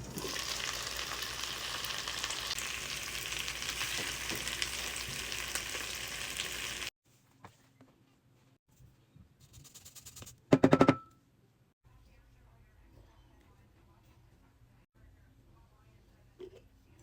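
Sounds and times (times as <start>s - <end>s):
food sizzling in hot oil: 0.0s - 6.9s.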